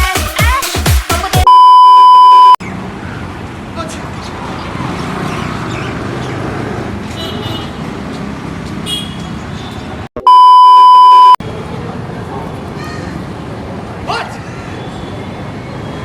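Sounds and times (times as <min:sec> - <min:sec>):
censor bleep tone: 0:01.5 - 0:02.6, 0:10.2 - 0:11.4
street traffic noise: 0:01.5 - 0:16.0.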